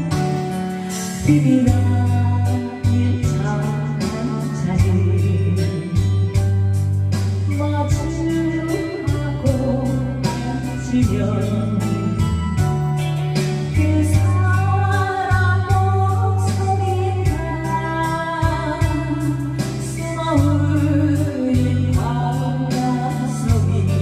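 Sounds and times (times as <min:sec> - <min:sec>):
band with bass and drums: 0:00.0 - 0:24.0.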